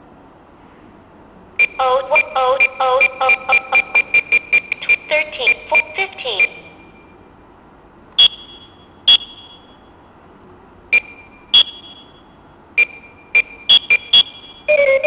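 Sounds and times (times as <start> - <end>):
alarm clock electronic beeps: 1.6 - 7.2, 8.2 - 9.8, 10.9 - 15.0.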